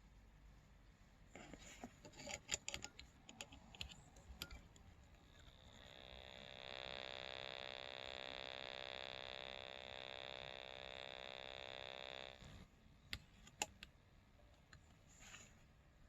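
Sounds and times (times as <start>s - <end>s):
electronic buzz from radio: 5.2s - 12.6s.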